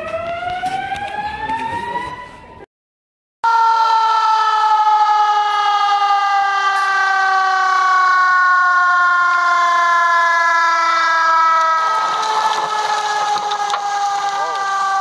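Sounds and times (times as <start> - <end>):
air raid siren falling tone: 3.4 - 15.0.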